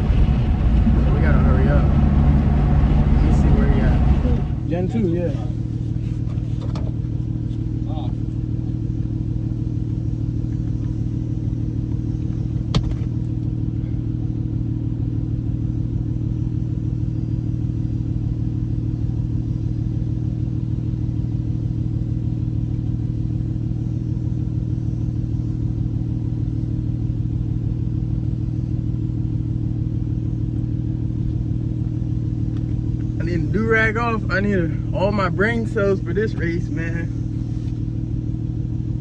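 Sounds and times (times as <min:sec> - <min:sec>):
car engine droning: 0:00.0 - 0:16.5, 0:28.3 - 0:39.0.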